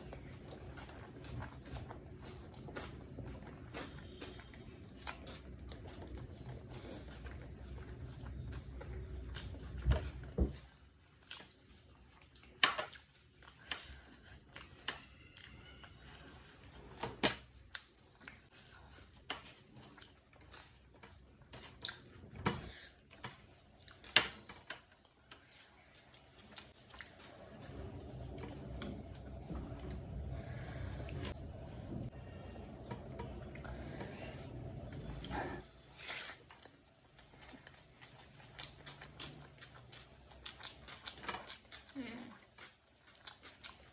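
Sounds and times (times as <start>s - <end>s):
wet chewing and mouth clicks: 0.0s - 10.4s, 34.8s - 43.9s.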